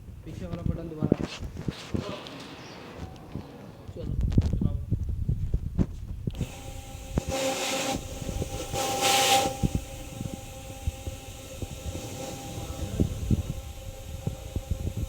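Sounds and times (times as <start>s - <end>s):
floor washing machine running: 6.3s - 15.0s
hissing bursts: 6.4s - 15.0s.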